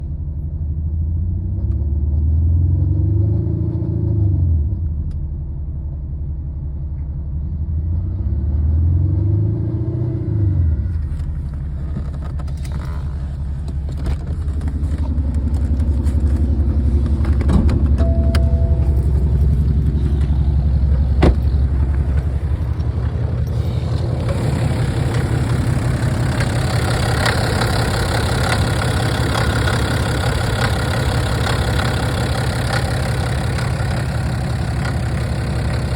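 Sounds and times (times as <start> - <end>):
diesel engine idling: 10.8 - 35.9
engine clicks: 11.0 - 35.9.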